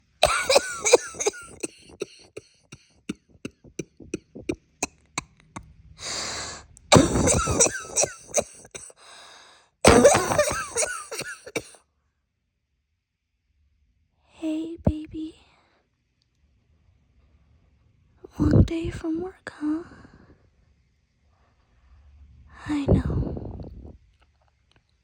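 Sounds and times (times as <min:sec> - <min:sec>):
woman coughing: 0:00.2 - 0:02.4, 0:06.0 - 0:09.0, 0:09.8 - 0:11.8
deep breath in: 0:06.0 - 0:06.6, 0:09.0 - 0:09.7.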